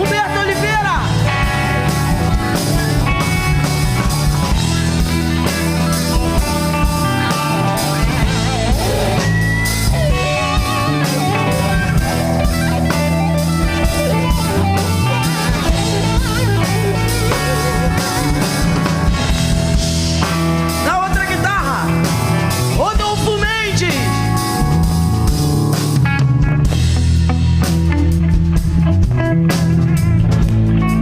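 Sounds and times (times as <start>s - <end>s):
rock band playing: 0.0s - 31.0s
electric guitar note bending: 1.1s - 20.8s.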